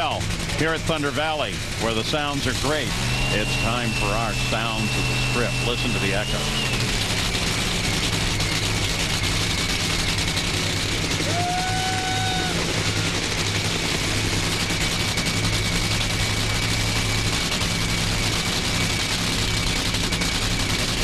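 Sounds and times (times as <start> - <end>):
racing engine with crackling exhaust: 0.0 - 21.0
short whistle-like tone: 3.0 - 7.0.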